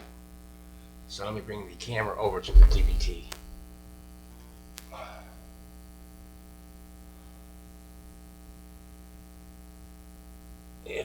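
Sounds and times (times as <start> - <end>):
electrical mains hum: 0.0 - 11.0
brief rustle: 2.3 - 3.6.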